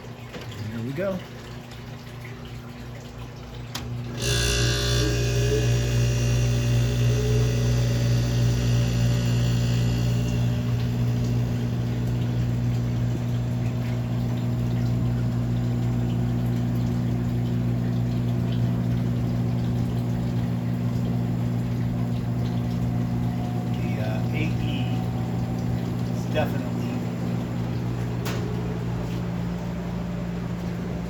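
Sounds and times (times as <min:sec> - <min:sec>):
air conditioner compressor humming: 0:00.0 - 0:31.0
fan air noise: 0:00.0 - 0:31.0.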